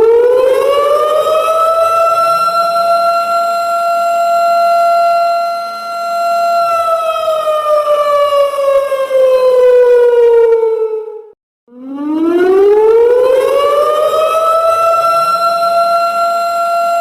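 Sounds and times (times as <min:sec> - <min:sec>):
siren slow wail: 0:00.0 - 0:17.0.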